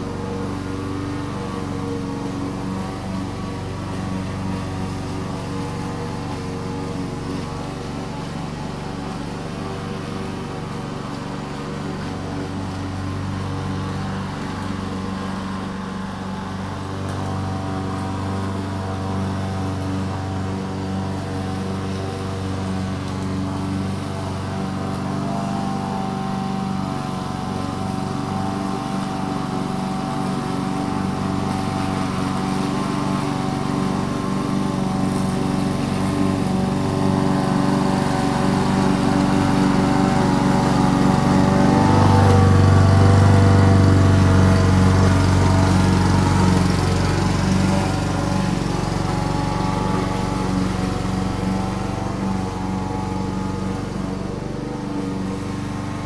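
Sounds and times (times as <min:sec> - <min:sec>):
lawn mower engine running: 0:00.0 - 0:56.0.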